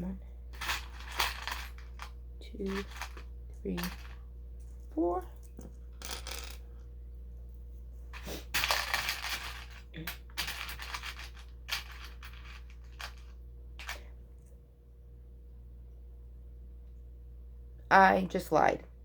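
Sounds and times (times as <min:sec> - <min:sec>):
plastic toy bricks clattering: 0:00.6 - 0:04.2, 0:08.2 - 0:14.0.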